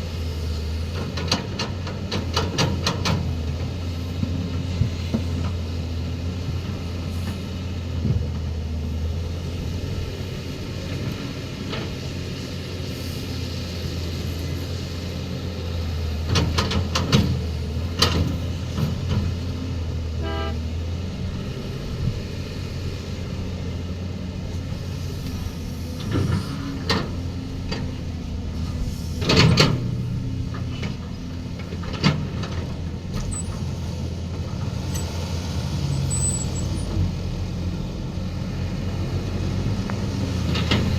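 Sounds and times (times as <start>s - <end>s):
diesel engine droning: 0.0s - 40.9s.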